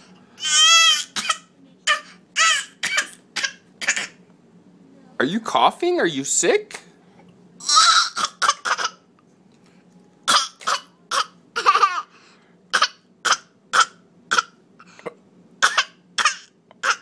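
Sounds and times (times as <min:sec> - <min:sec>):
toddler coughing: 0:00.9 - 0:04.2, 0:07.7 - 0:09.0, 0:10.3 - 0:12.1, 0:12.7 - 0:14.6, 0:15.6 - 0:17.0.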